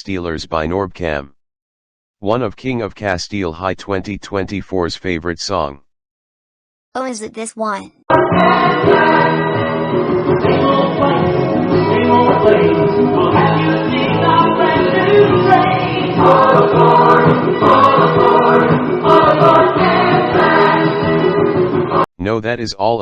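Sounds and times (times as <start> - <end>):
choir singing held chords: 8.1 - 22.1.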